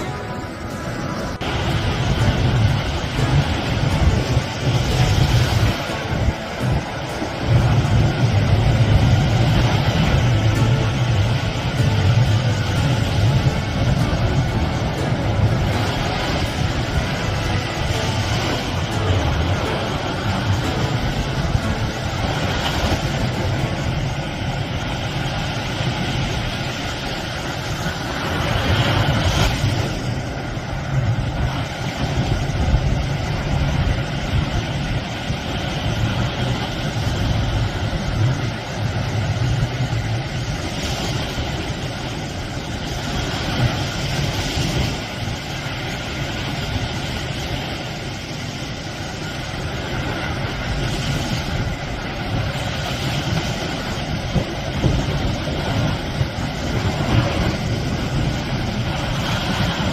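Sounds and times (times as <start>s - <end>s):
sea waves breaking on shore: 0.0s - 59.9s.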